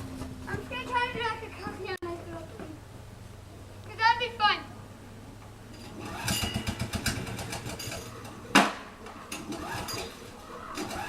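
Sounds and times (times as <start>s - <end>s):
small engine sputtering: 5.7s - 11.0s
sharp loud knock: 8.5s - 8.9s.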